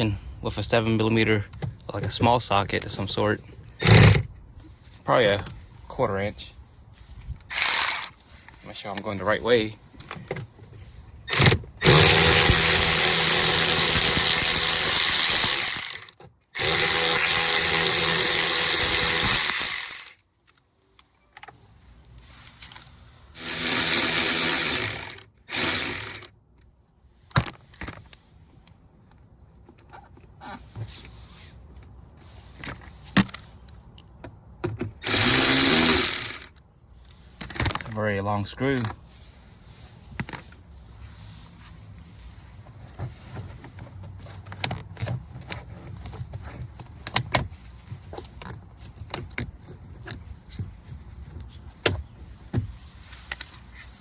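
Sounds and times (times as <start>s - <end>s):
power driver spinning: 3.8s - 4.2s, 7.5s - 8.1s, 11.3s - 20.1s, 23.4s - 26.3s, 35.0s - 36.5s.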